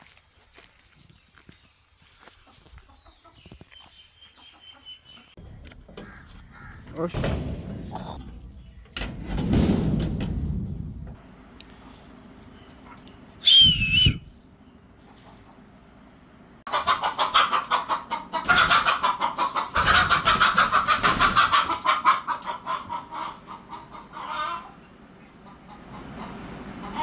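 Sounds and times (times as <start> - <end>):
chickens cackling: 2.2 - 7.1, 10.5 - 27.0.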